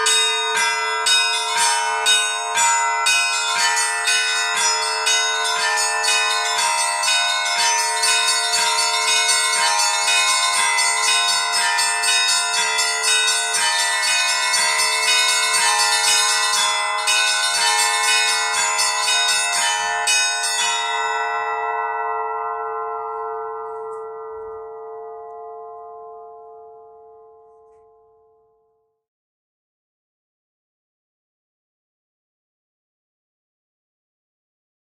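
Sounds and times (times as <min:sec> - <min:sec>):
church bells ringing: 0:00.0 - 0:28.5.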